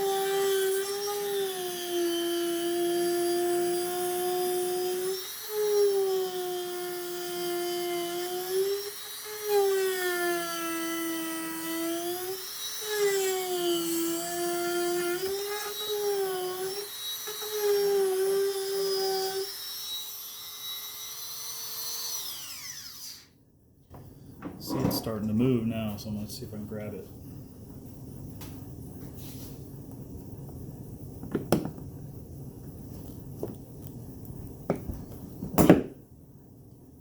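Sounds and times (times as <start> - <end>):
rotary tool grinding whine: 0.0 - 23.3.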